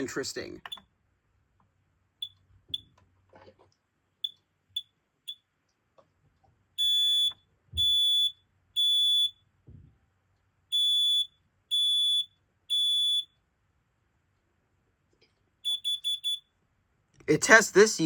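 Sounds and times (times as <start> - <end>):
high-pitched alarm beeps: 6.8 - 9.4, 10.7 - 13.3, 15.7 - 16.4
quick short beeps: 15.7 - 16.4.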